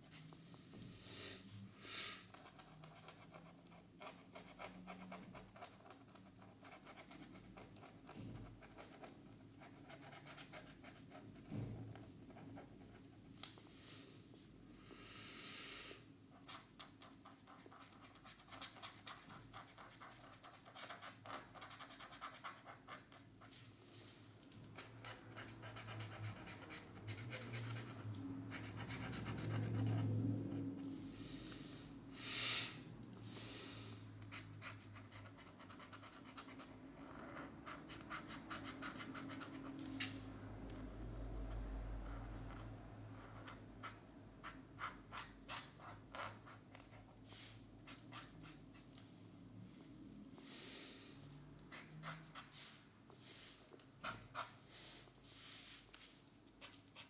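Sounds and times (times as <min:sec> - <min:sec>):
markers scratching on paper: 0:02.2 - 0:13.4, 0:16.4 - 0:23.6, 0:24.6 - 0:30.2, 0:34.2 - 0:40.2, 0:41.4 - 0:49.0, 0:51.6 - 0:52.8, 0:53.5 - 0:57.0.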